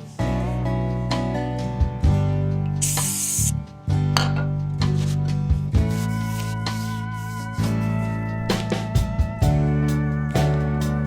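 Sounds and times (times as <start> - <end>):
short high hiss: 2.8 - 3.5.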